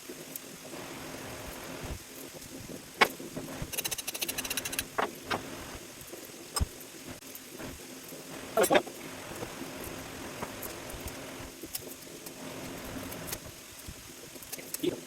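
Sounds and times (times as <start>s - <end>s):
faint steady hum: 0.0s - 15.0s
fast run of clicks: 1.9s - 8.2s.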